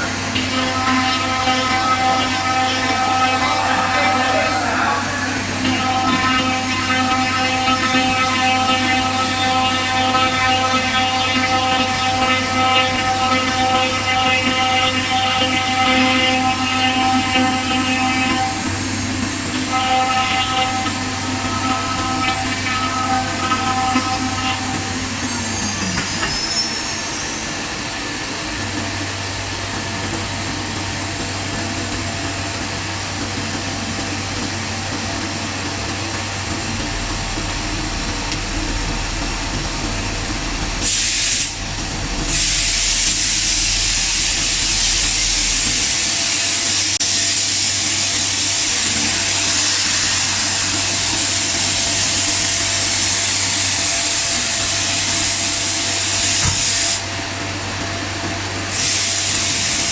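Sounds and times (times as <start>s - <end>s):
router machine running: 0.0s - 27.4s, 29.0s - 59.9s
hissing burst: 34.0s - 57.1s.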